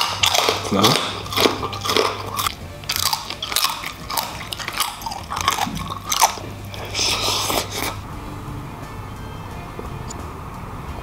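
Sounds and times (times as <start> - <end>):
crunching and chewing: 0.0 - 8.0.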